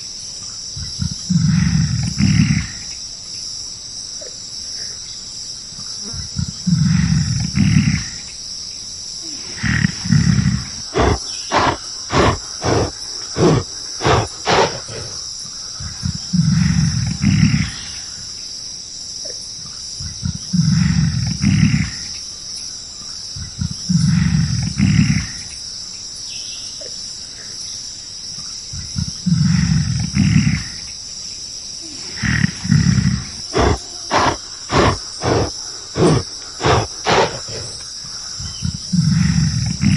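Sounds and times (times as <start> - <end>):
high insect drone: 0.0 - 39.9
gorilla roaring: 6.6 - 8.2, 9.3 - 15.2, 16.4 - 17.9, 20.6 - 22.1, 29.2 - 30.8, 31.8 - 37.8, 38.9 - 39.9.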